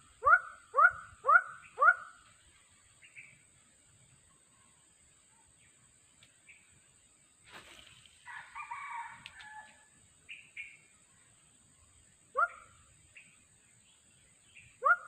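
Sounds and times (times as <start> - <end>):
short rustle: 7.4 - 8.3
rooster crowing: 8.2 - 9.9.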